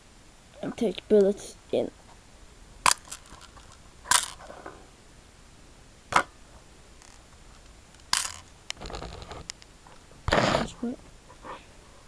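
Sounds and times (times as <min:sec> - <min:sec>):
short rattle: 0:08.1 - 0:09.3.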